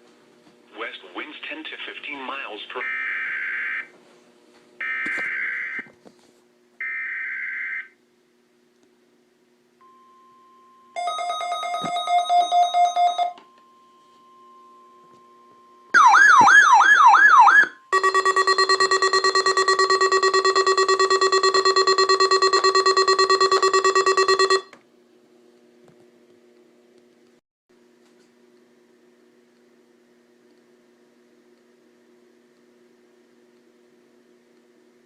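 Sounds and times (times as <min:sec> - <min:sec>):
warbling siren-like alarm: 0:02.8 - 0:03.9, 0:04.8 - 0:05.9, 0:06.8 - 0:08.0, 0:15.9 - 0:24.7
rapidly pulsing alarm: 0:02.8 - 0:04.0, 0:04.8 - 0:05.9, 0:06.8 - 0:08.0, 0:11.0 - 0:24.8
beeping alarm: 0:09.8 - 0:24.8.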